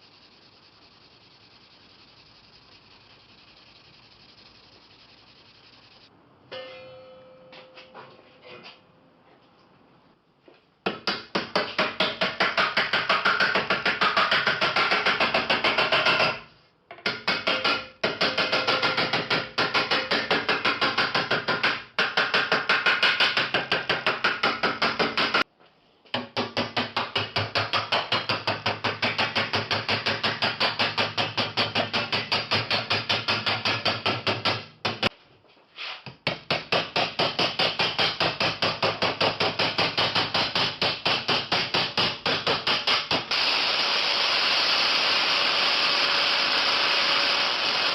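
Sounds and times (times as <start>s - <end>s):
hammer blows on ringing metal: 6.5s - 8.1s.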